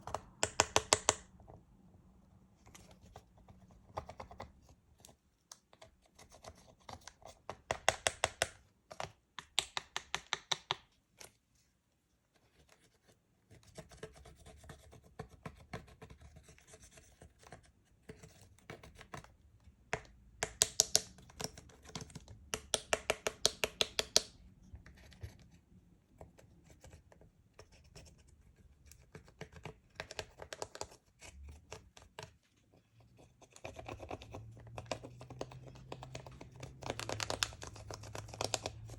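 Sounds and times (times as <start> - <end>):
slime being kneaded by hand: 33.7 - 38.9.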